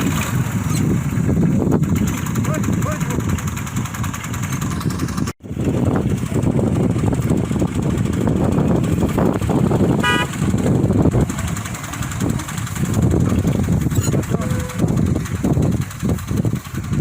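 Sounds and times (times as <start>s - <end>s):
tractor and straw chopper din: 0.0s - 17.0s
horn toot: 10.0s - 10.4s.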